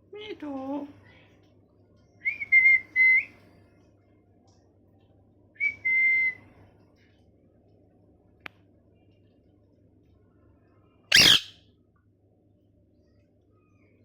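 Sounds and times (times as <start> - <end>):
parrot whistling: 11.1 - 11.6.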